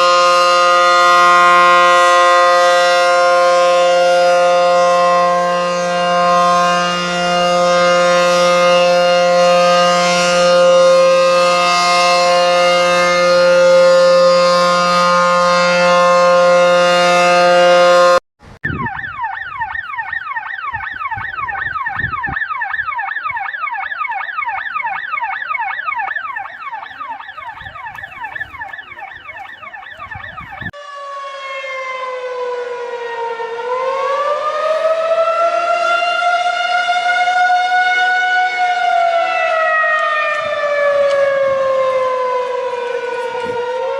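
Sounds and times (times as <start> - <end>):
wailing siren tone: 0.0 - 43.9.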